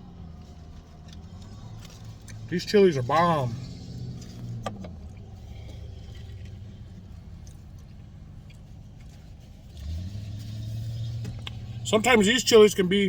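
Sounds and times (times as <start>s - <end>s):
person chewing food: 5.0s - 9.2s.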